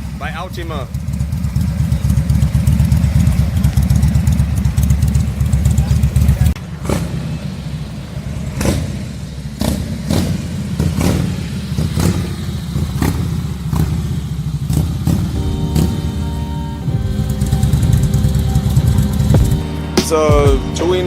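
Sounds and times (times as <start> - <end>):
exhaust cracks: 0.0 - 21.0
motorcycle engine deep rumble: 0.0 - 21.0
music: 15.3 - 21.0.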